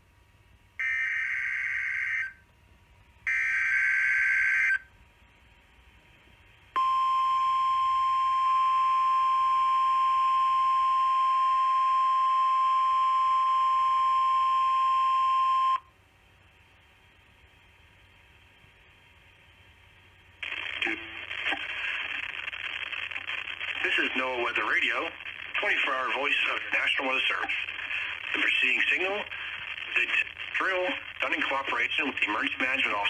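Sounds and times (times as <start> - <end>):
steady warning alarm tone: 0.8 - 2.4, 3.3 - 4.9, 6.8 - 15.8.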